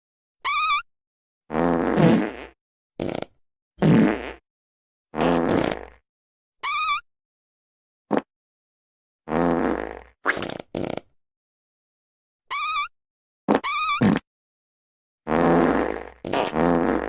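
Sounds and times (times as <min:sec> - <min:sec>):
high wavering squeaky fart: 0:00.4 - 0:00.9, 0:01.5 - 0:04.4, 0:05.2 - 0:06.0, 0:06.6 - 0:07.1, 0:09.3 - 0:11.1, 0:12.5 - 0:12.9, 0:13.5 - 0:14.3, 0:15.3 - 0:17.0
low buzzy farts: 0:01.5 - 0:04.4, 0:05.2 - 0:06.0, 0:09.3 - 0:11.1, 0:15.3 - 0:17.0
sputtering fart: 0:01.5 - 0:04.4, 0:05.2 - 0:06.0, 0:09.3 - 0:11.1, 0:13.5 - 0:14.3, 0:15.3 - 0:17.0.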